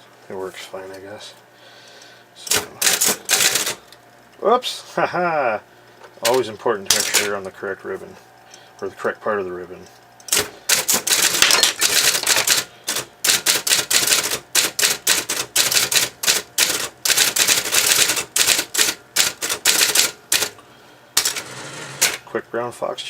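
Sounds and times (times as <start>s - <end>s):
electric typewriter typing: 2.4s - 3.8s, 6.2s - 7.4s, 10.3s - 20.6s, 21.2s - 22.2s.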